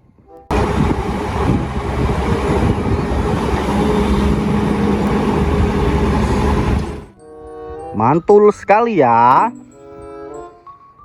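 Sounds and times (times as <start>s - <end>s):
heavy machinery engine running: 0.5s - 7.1s
steady hum: 0.5s - 7.1s.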